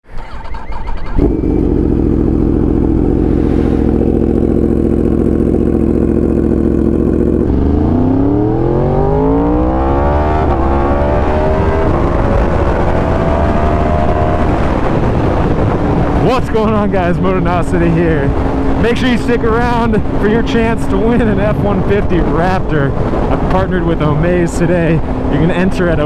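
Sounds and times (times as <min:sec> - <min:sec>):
engine clatter: 0:00.0 - 0:08.3
motorcycle engine idling and revving: 0:00.0 - 0:26.0.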